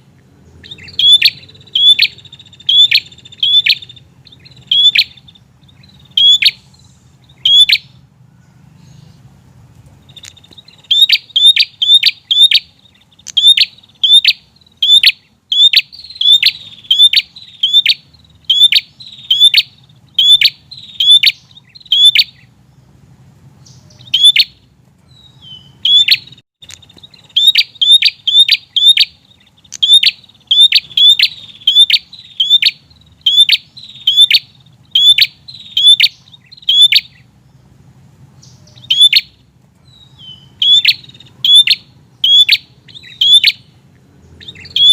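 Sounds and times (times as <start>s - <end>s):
bird calling sharp chip notes: 0.6s - 8.0s, 10.0s - 22.5s, 23.6s - 37.2s.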